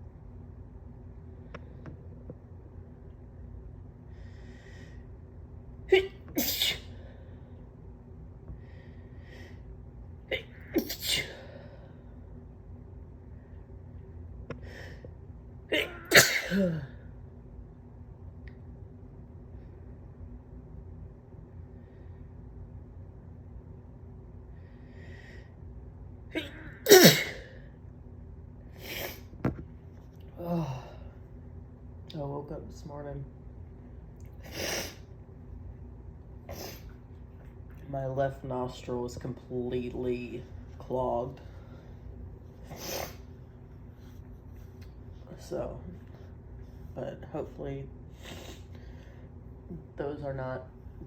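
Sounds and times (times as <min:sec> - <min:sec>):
person sneezing: 0:05.9 - 0:07.0, 0:10.3 - 0:11.5, 0:15.7 - 0:17.0, 0:26.4 - 0:27.6.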